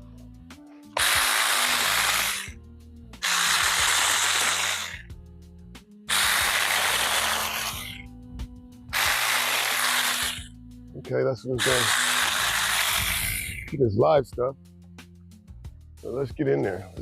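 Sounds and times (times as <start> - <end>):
mini chainsaw cutting branches: 1.0 - 2.6, 3.2 - 5.1, 6.1 - 8.0, 8.9 - 10.5, 11.6 - 13.7.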